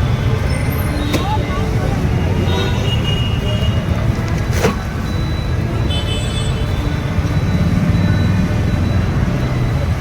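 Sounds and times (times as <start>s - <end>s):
road traffic rumble: 0.0s - 10.0s.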